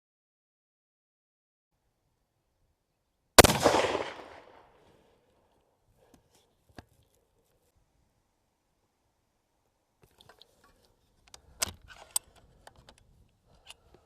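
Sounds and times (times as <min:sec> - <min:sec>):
rifle shot: 0:03.4 - 0:04.8.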